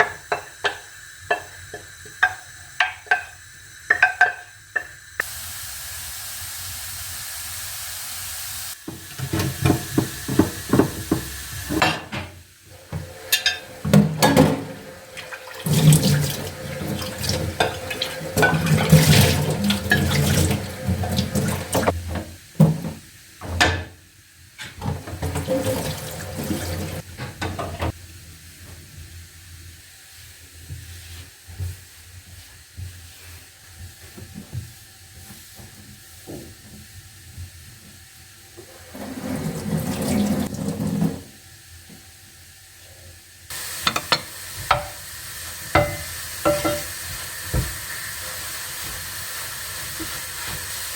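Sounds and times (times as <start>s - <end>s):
kitchen tap running: 0.0s - 24.0s, 24.6s - 28.0s, 38.6s - 41.4s, 43.5s - 50.9s
kitchen clatter and scraping: 8.9s - 24.0s, 24.6s - 28.0s, 38.6s - 41.4s, 43.7s - 45.0s, 45.7s - 47.8s.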